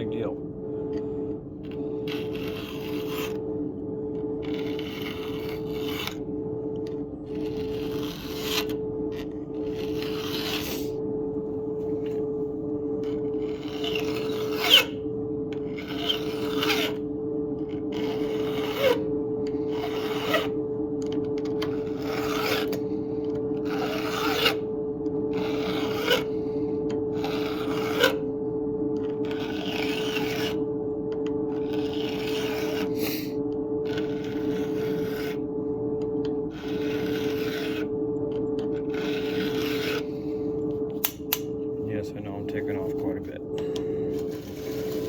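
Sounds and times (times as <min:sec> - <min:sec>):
steady low hum: 0:00.0 - 0:45.0
sharp click: 0:41.0 - 0:41.5.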